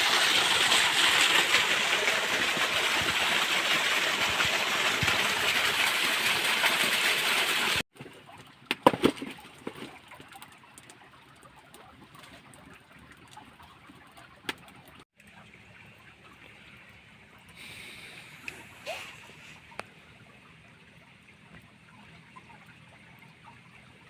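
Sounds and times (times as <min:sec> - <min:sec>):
water rushing in a stream: 0:00.0 - 0:24.0
short sharp knocks or splashes: 0:08.7 - 0:10.0.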